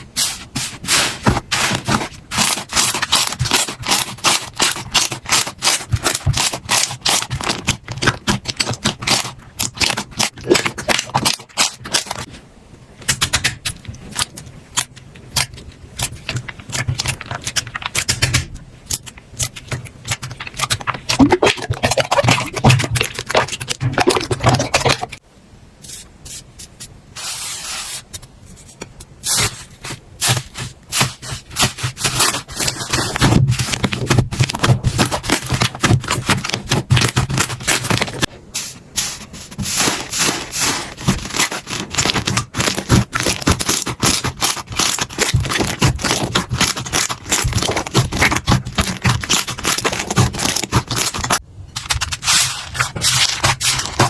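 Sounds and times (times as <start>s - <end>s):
hands squishing slime: 0.2s - 12.3s, 13.1s - 25.2s, 29.3s - 38.3s, 38.9s - 54.0s.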